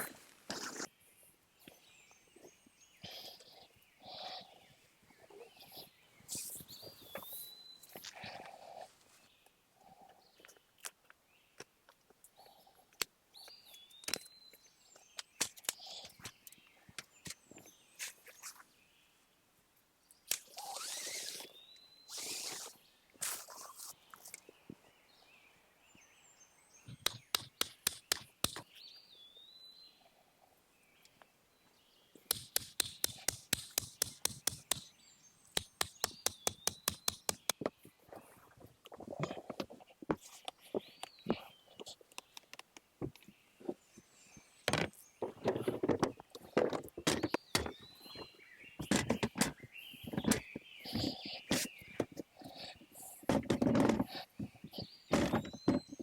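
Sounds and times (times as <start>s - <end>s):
sharp clicks and taps: 26.9s - 28.7s, 32.3s - 34.9s, 35.5s - 37.7s, 42.1s - 43.3s.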